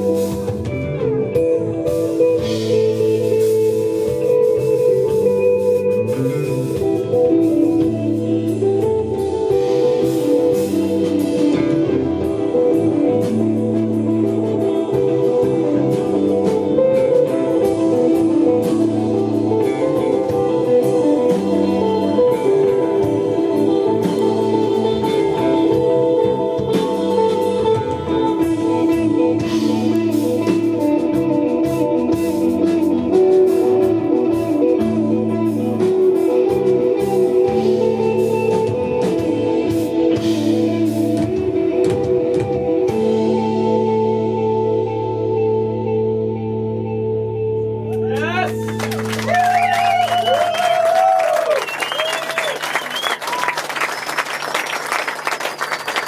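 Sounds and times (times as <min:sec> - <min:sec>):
drums and cymbal hits: 0:00.0 - 0:43.7
bass guitar figure: 0:00.0 - 0:53.0
electric guitar lines: 0:00.0 - 0:56.0.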